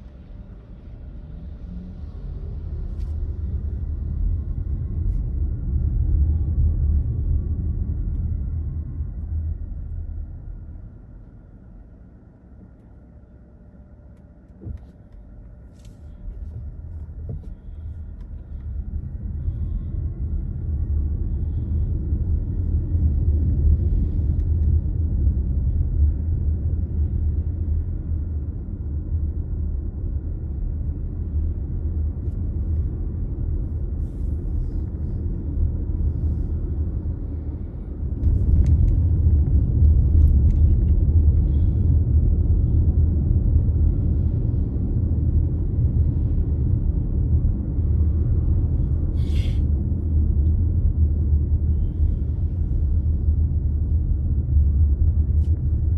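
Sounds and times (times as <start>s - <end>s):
car driving rumble: 14.5s - 55.9s.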